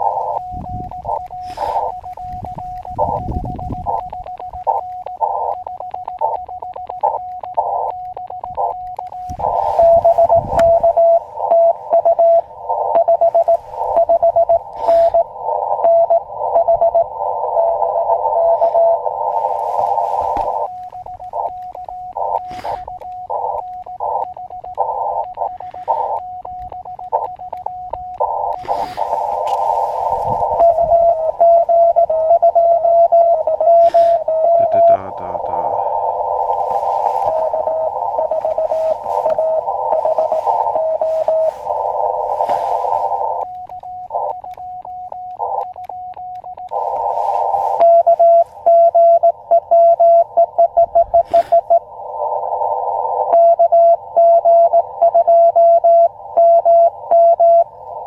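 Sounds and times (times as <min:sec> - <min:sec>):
fainter lower morse code reply: 0:00.0 - 0:51.9, 0:53.0 - 0:58.0
morse code sidetone: 0:00.0 - 0:58.0
receiver hiss: 0:00.0 - 0:58.0
sharp clicks: 0:00.0 - 0:58.0.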